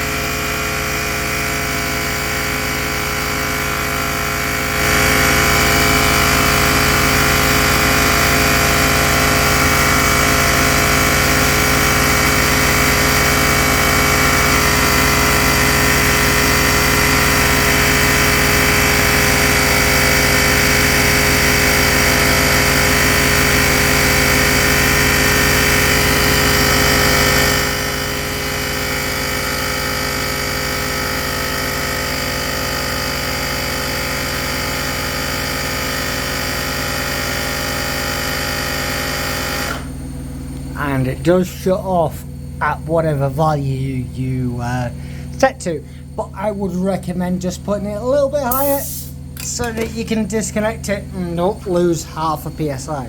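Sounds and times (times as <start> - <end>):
small compressor pumping tyre: 0.0 - 42.6, 44.9 - 46.6, 47.2 - 53.0
quiet machine hum: 39.9 - 53.0.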